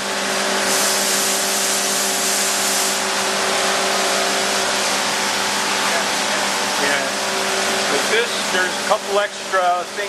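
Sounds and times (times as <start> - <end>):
grinding machine hum: 0.0 - 10.0.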